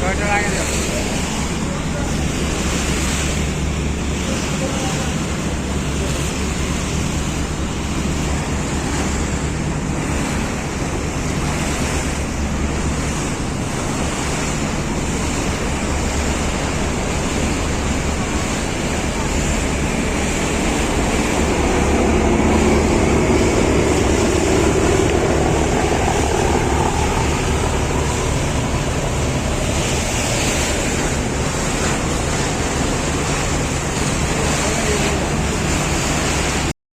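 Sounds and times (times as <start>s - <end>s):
boat engine drone: 0.0s - 36.7s
water rushing past hull: 0.0s - 36.7s
wind on microphone: 4.8s - 36.7s.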